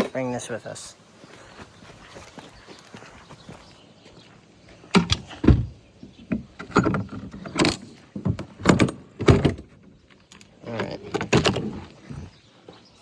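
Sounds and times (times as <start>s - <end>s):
parts knocking and clattering: 4.9s - 12.0s.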